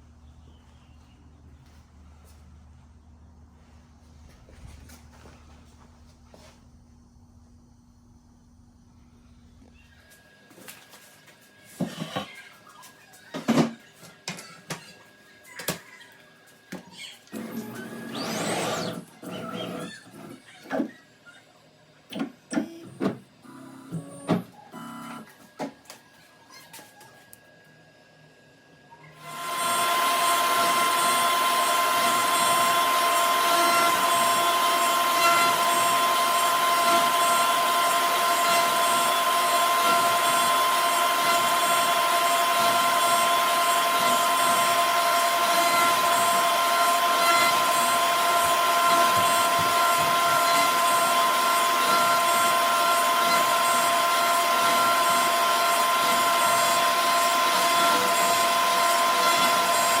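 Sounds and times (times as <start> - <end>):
router spindle high whine: 17.3 - 20.4, 29.2 - 60.0.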